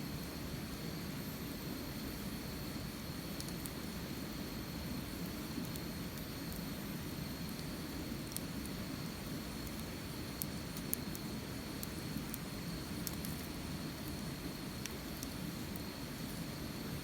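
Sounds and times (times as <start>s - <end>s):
wood fire burning: 1.9s - 17.0s
fire pops and crackles: 7.5s - 16.4s.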